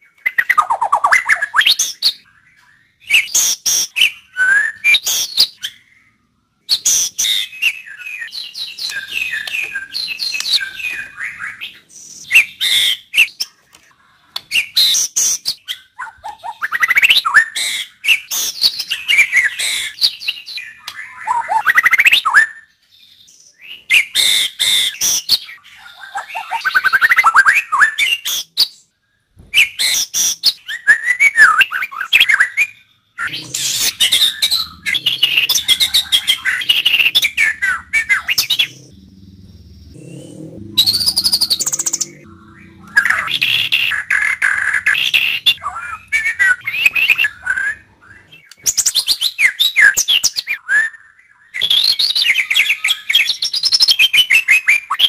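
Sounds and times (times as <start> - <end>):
bird singing whistles and chatters: 0.0 - 13.7, 14.5 - 55.0.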